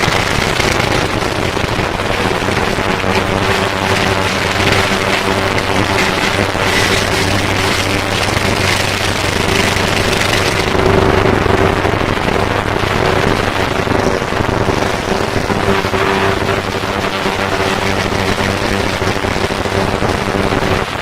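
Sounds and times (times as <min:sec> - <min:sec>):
race car engine idling: 0:00.0 - 0:20.7
exhaust crackle: 0:00.0 - 0:21.0.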